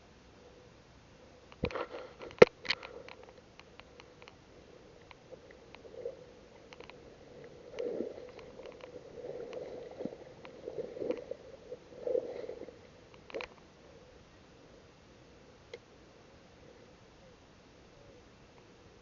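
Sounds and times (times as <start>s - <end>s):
small clicks: 1.5s - 4.4s, 6.7s - 9.7s, 13.1s - 13.6s
water gurgling and sloshing: 1.6s - 14.3s.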